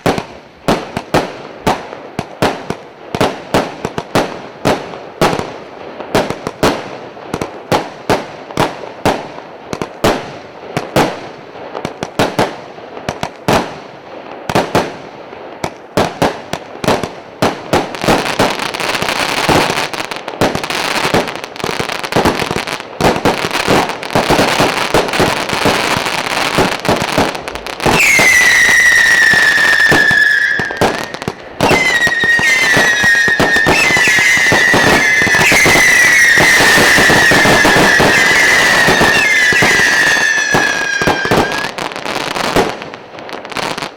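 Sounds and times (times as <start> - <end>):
firework crackling: 0.0 - 43.9
firework shots: 0.0 - 43.9
firework whistles: 24.6 - 42.7.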